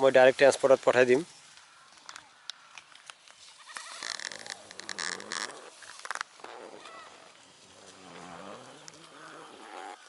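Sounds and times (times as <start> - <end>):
grass rustling and tearing: 0.6 - 10.0
low animal call: 3.7 - 10.0.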